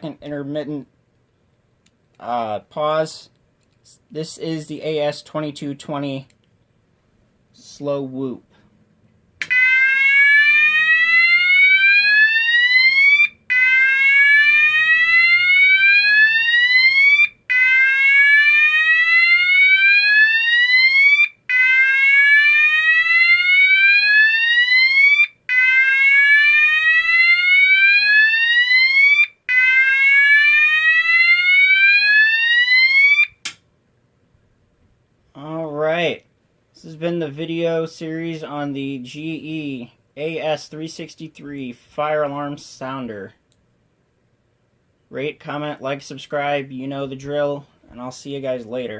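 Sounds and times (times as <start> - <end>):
fire alarm whoop tone: 9.5 - 33.4.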